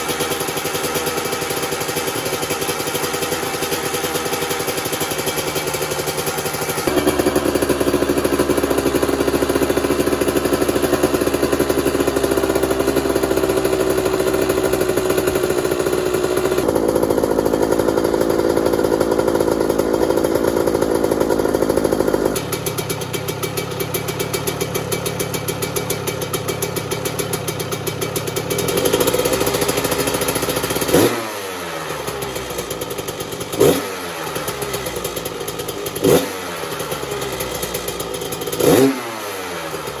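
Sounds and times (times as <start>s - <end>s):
motorcycle engine idling: 0.0s - 40.0s
engine throttle blips: 1.2s - 22.8s.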